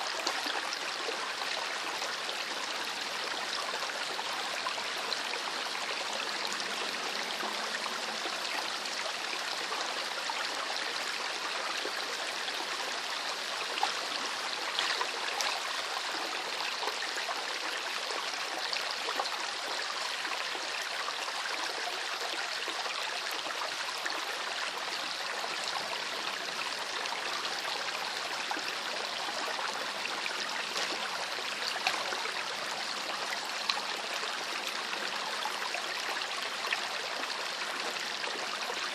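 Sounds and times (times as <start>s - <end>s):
river flowing over stones: 0.0s - 38.9s
water splashes: 13.4s - 16.3s, 29.0s - 33.9s.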